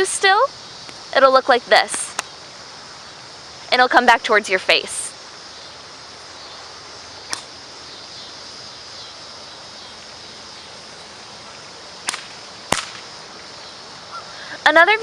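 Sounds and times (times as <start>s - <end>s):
steady background hiss: 0.0s - 15.0s
whip cracks: 7.3s - 7.5s, 12.0s - 13.1s.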